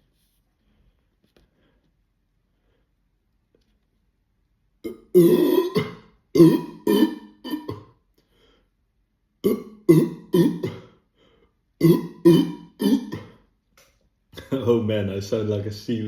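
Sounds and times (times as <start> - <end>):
man burping: 4.8 - 8.0, 9.4 - 11.0, 11.8 - 13.5.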